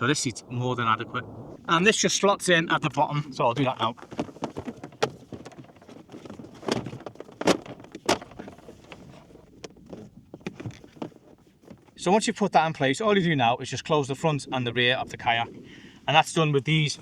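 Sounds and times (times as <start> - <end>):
plastic knocks and clicks: 3.6 - 12.0.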